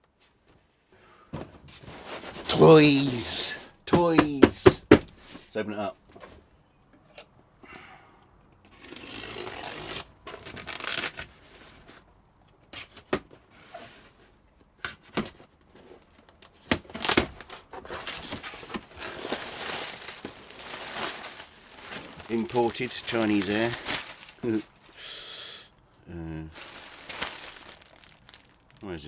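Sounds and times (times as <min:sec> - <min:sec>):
cardboard and packing material rustling: 0:01.5 - 0:03.6, 0:16.7 - 0:25.0, 0:26.6 - 0:29.0
packing tape tearing: 0:08.7 - 0:11.3, 0:16.7 - 0:24.8, 0:26.6 - 0:28.8.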